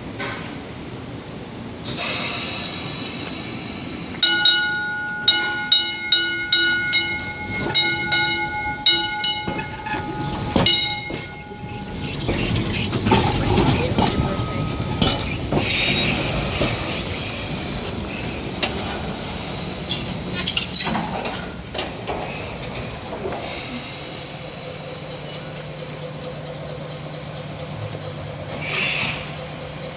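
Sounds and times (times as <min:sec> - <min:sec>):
streetcar rumbling on rails: 0:00.0 - 0:29.9
streetcar gong clanging: 0:04.2 - 0:15.9
wheel squeal: 0:09.4 - 0:16.6.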